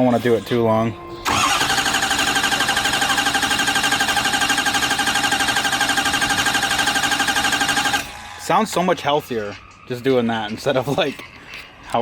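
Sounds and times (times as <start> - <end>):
diesel engine cranking without firing: 1.2 - 8.2.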